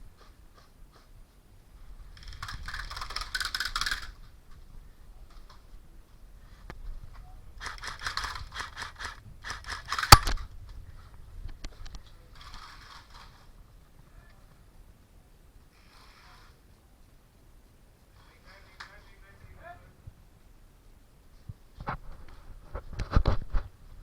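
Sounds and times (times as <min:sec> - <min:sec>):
sharp crack: 0:10.1 - 0:10.4.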